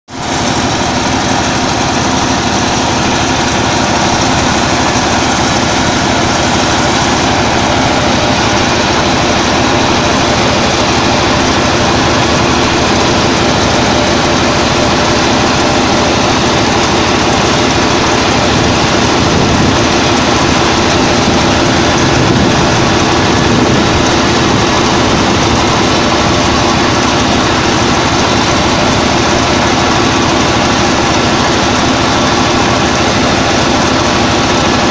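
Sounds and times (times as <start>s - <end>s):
combine harvester engine drone: 0.1s - 34.9s.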